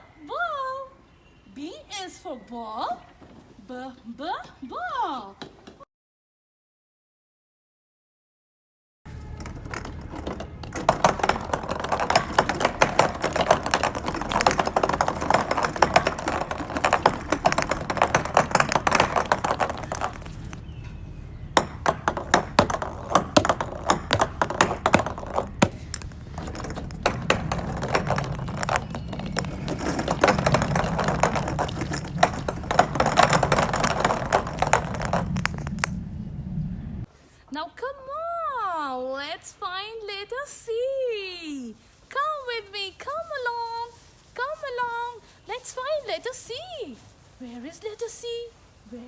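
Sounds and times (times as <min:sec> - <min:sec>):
plastic balls clattering: 0:09.3 - 0:20.7, 0:21.6 - 0:36.0.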